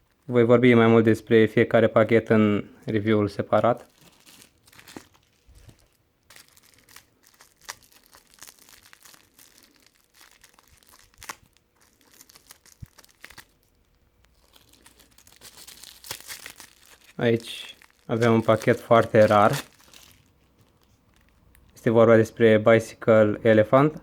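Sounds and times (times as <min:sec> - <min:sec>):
packaging crinkling: 0:03.5 - 0:21.8.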